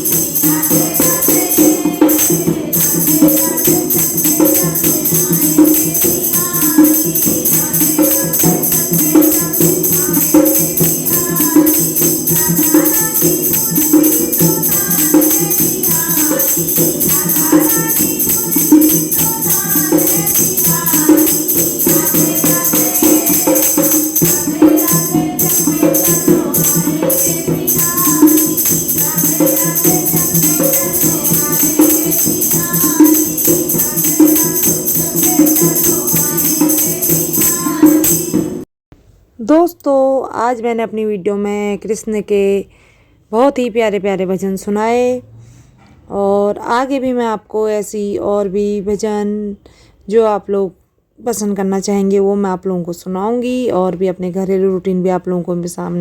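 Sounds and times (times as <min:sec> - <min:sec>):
voices singing: 0:00.0 - 0:38.5
regular drum beat: 0:00.0 - 0:38.6
tambourine jingling: 0:00.0 - 0:38.7.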